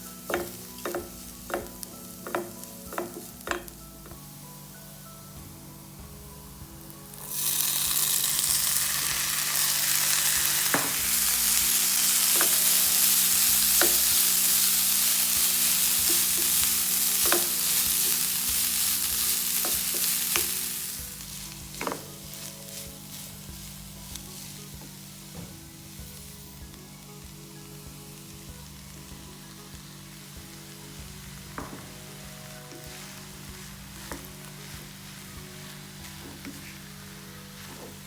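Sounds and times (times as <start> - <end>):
food sizzling in oil: 0.0 - 38.0
spoon knocking and scraping pan: 0.2 - 4.2, 10.4 - 22.4.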